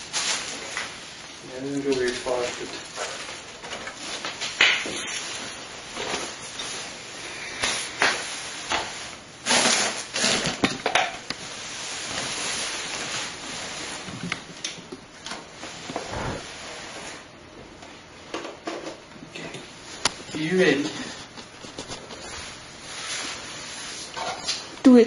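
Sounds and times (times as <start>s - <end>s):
cables and hardware rustling and knocking: 1.7s - 7.0s.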